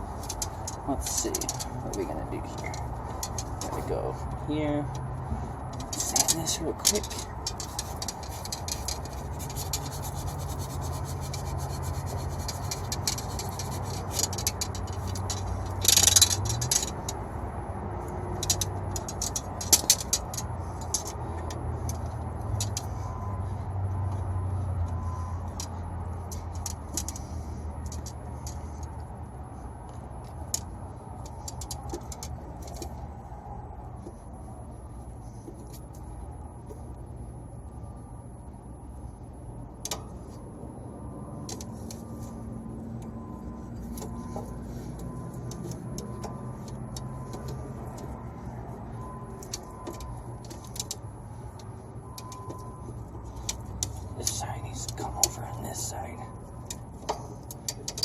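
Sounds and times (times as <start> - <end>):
copper tube sanding: 5.8 - 17.6.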